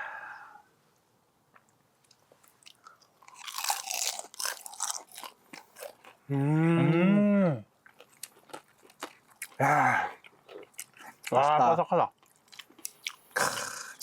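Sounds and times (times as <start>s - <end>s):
crunchy dumpling chewing: 2.0s - 6.3s, 7.8s - 11.5s, 12.1s - 14.0s.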